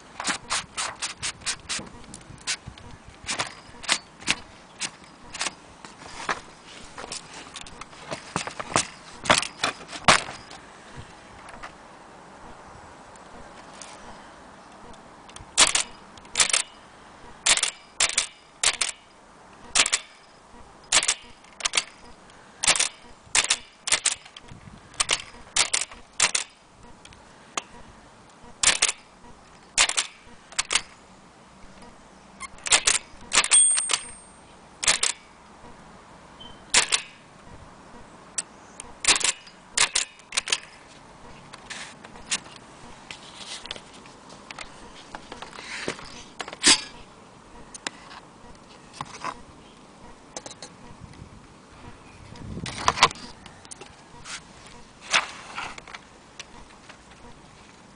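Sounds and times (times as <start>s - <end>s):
typewriter bell ring: 32.7s - 35.2s.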